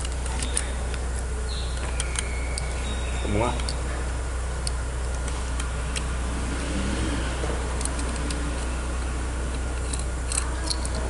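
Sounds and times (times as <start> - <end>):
metal parts clicking: 0.0 - 1.0, 1.8 - 2.8, 7.8 - 8.7, 9.5 - 11.0
steady low hum: 0.0 - 11.0.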